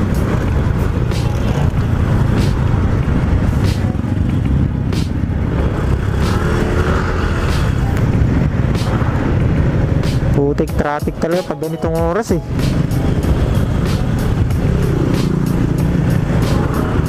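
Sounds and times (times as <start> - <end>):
motorcycle engine: 0.0 - 10.4, 12.4 - 17.0
wind rumbling over microphone: 0.0 - 10.6
road noise: 0.0 - 17.0.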